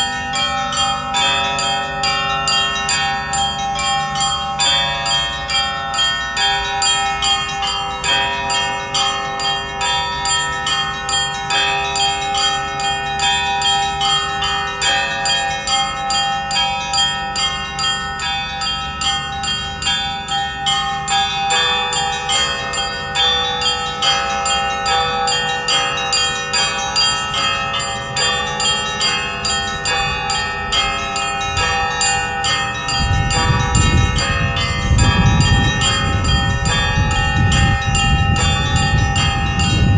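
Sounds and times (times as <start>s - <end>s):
church bells pealing: 0.0s - 39.9s
low rumbling noise: 32.8s - 39.9s.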